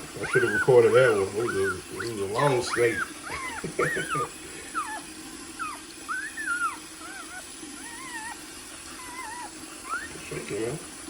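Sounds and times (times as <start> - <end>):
puppy whimpering: 0.1 - 10.4.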